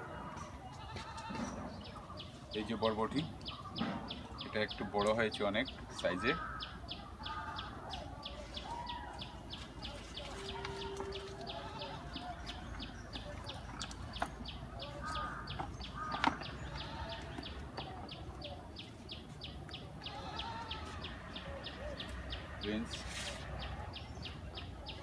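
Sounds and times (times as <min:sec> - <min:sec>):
birds calling: 0:00.0 - 0:25.0
high bird chirp: 0:06.0 - 0:23.2.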